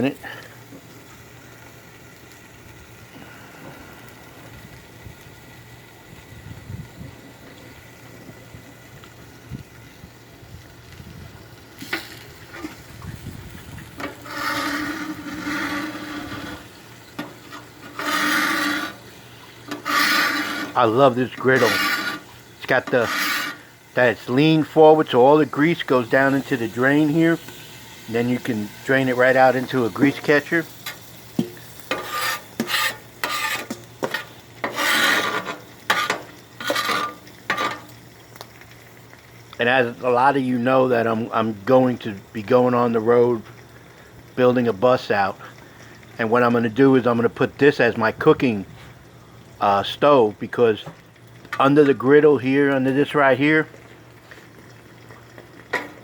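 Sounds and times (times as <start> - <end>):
hot griddle hissing: 0.0 - 42.4
metal scraping across a griddle: 11.8 - 38.0.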